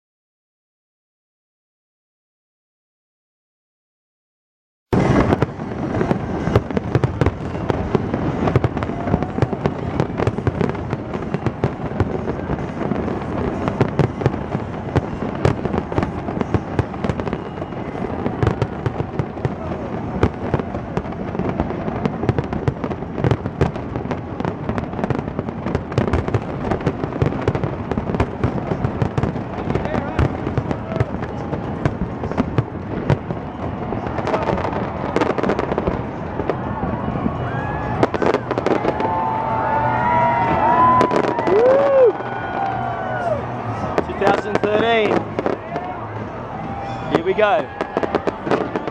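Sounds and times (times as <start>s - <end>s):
fireworks bangs and crackles: 4.9s - 48.9s.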